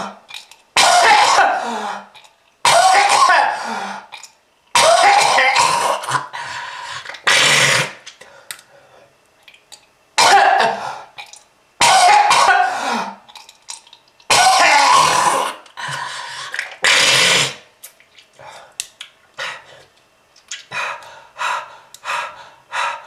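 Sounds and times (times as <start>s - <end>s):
person coughing hard: 0.8s - 1.8s, 2.6s - 3.8s, 4.8s - 6.3s, 10.2s - 10.9s, 11.8s - 13.2s, 14.3s - 15.6s.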